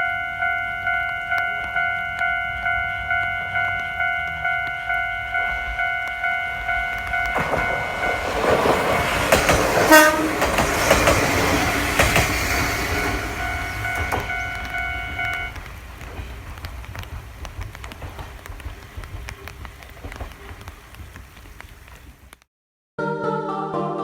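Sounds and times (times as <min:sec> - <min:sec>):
steady high tone: 0:00.0 - 0:15.6
diesel railcar rumble: 0:00.0 - 0:22.4
train wheel clicks: 0:00.0 - 0:22.4.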